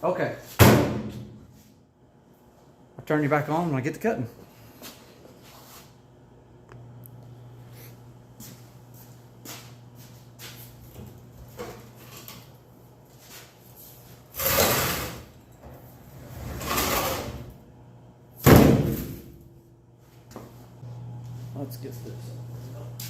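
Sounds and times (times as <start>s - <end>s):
metal cabinet scraping on floor: 14.3s - 15.3s, 16.0s - 17.5s.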